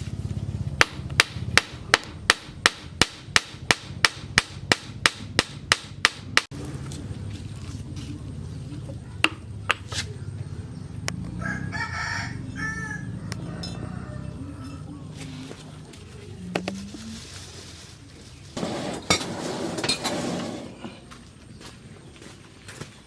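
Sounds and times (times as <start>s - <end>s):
hammer striking steel: 0.8s - 6.5s
rooster crowing: 11.2s - 15.5s.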